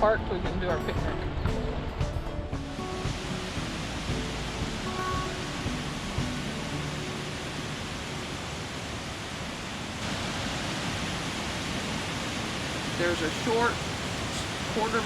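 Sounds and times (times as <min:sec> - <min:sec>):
waterfall rushing: 0:02.6 - 0:15.0.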